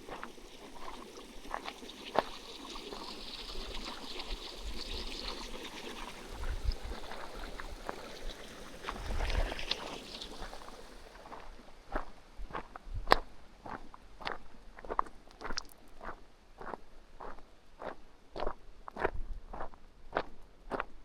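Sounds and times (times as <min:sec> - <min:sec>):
stream trickling: 0:00.0 - 0:11.3, 0:15.4 - 0:16.0
footsteps on rough path: 0:06.4 - 0:20.9.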